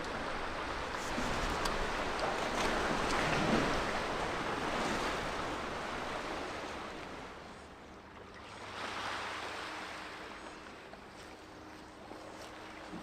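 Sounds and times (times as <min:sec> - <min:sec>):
sea waves washing on shore: 0:00.0 - 0:07.8.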